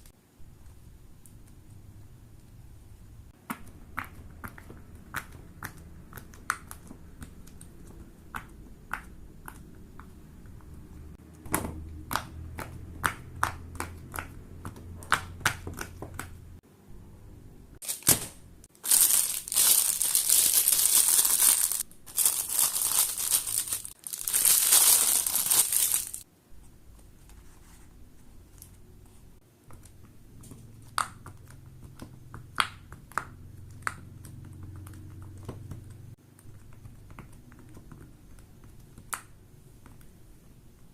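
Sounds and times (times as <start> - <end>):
plastic crinkling and rustling: 17.8 - 26.2.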